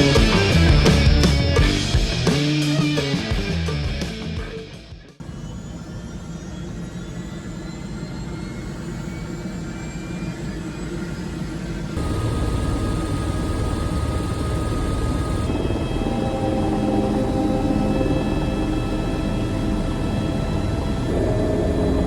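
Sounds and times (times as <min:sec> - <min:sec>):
helicopter engine and rotor: 0:05.2 - 0:22.0
thin steady whine: 0:05.2 - 0:22.0.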